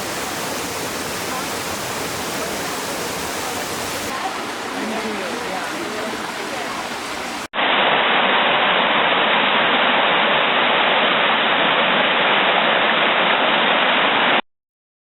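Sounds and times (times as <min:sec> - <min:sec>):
waterfall rushing: 0:00.0 - 0:07.6.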